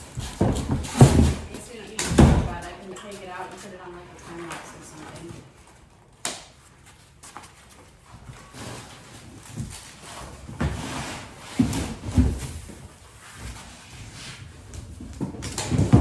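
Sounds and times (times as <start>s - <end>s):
packaging rustling and scraping: 6.7s - 15.8s.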